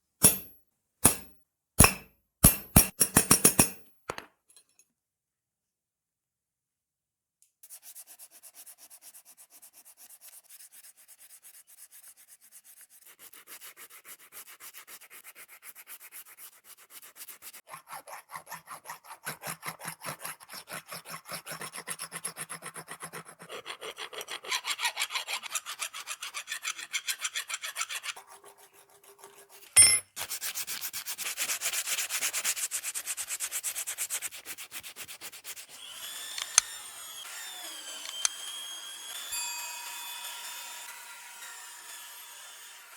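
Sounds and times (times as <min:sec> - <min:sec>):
sharp knock: 0:00.2 - 0:03.8.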